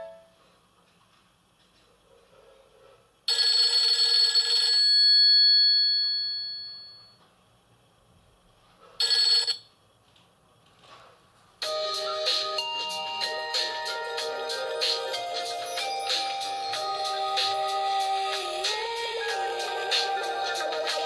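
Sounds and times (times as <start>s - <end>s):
phone ringtone from loudspeaker: 3.3s - 7.2s, 9.0s - 9.7s, 11.6s - 21.0s.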